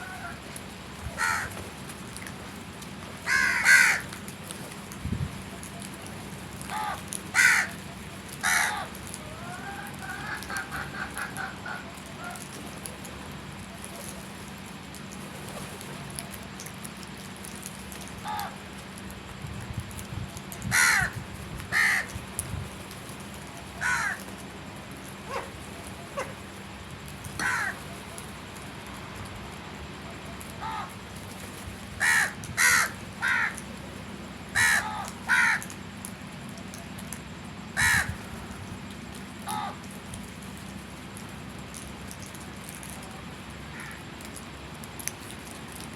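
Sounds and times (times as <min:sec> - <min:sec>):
crows cawing: 0:01.1 - 0:01.6, 0:03.2 - 0:04.2, 0:06.6 - 0:07.8, 0:08.4 - 0:12.4, 0:18.2 - 0:18.6, 0:20.7 - 0:22.2, 0:23.8 - 0:24.3, 0:27.4 - 0:27.9, 0:30.6 - 0:31.0, 0:32.0 - 0:33.7, 0:34.5 - 0:35.8, 0:37.8 - 0:38.3, 0:39.4 - 0:39.9, 0:43.7 - 0:44.0.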